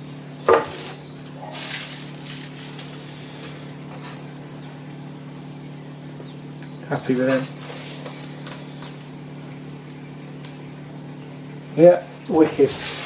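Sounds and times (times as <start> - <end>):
steady low hum: 0.0 - 13.0
packaging rustling: 1.6 - 3.1.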